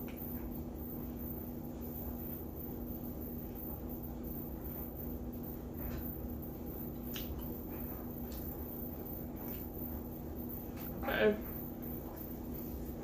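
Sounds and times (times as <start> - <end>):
steady low hum: 0.0 - 13.0
person chewing food: 6.9 - 9.8.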